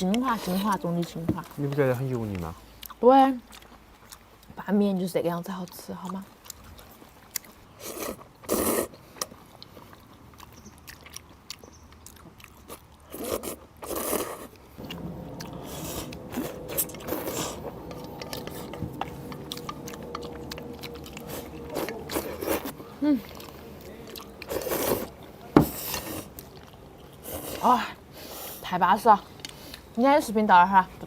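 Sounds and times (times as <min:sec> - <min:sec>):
person chewing: 0:02.7 - 0:04.6, 0:06.4 - 0:28.5
faint steady hum: 0:14.6 - 0:31.0.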